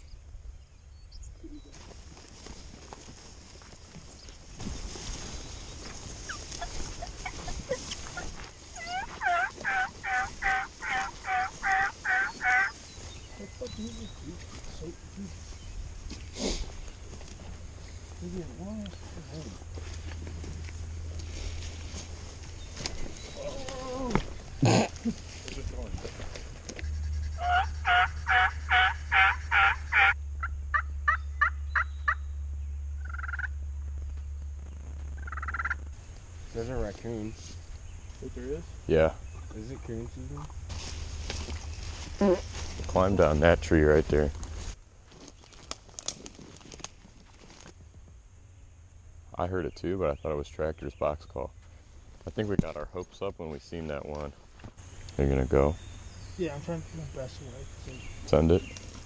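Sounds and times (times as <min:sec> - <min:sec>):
turkey yelps: 0:06.2 - 0:12.8, 0:26.8 - 0:32.2, 0:33.0 - 0:33.5, 0:35.2 - 0:35.8.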